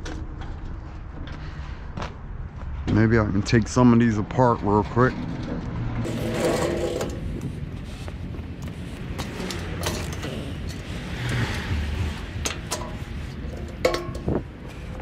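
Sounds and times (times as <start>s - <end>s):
steady low rumble: 0.0s - 15.0s
scrap metal clanking: 4.8s - 8.0s, 9.1s - 15.0s.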